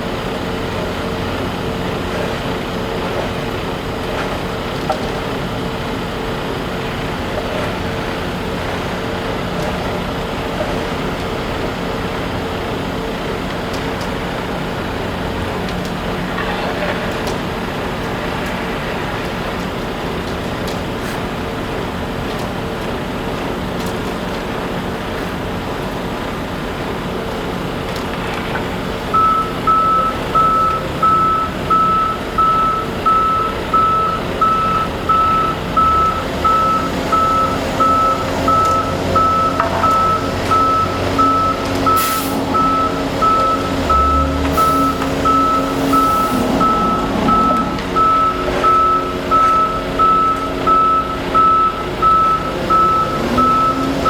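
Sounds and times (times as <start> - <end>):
truck engine running: 0.0 - 54.0
reversing alarm beeping: 29.1 - 54.0.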